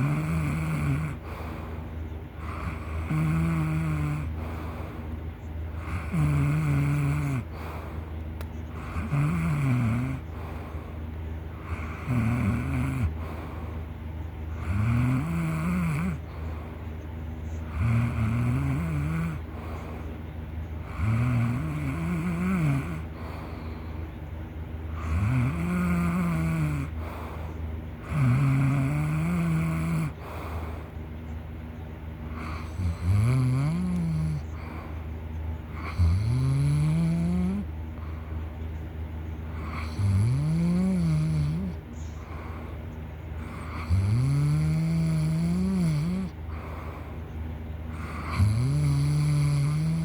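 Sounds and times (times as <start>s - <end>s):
person snoring loudly: 0.0s - 1.4s, 2.4s - 4.4s, 5.8s - 7.7s, 8.8s - 10.3s, 11.6s - 13.2s, 14.6s - 16.3s, 17.7s - 19.5s, 20.8s - 23.2s, 25.0s - 27.0s, 28.0s - 30.5s, 32.4s - 34.8s, 35.7s - 37.7s, 39.5s - 42.4s, 43.4s - 46.7s, 47.9s - 50.0s.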